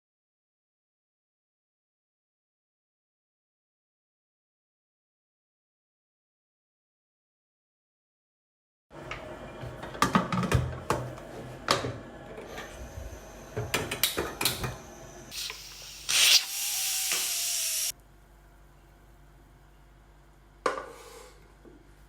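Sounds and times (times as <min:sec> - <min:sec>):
loud hiss: 0:15.3 - 0:17.9.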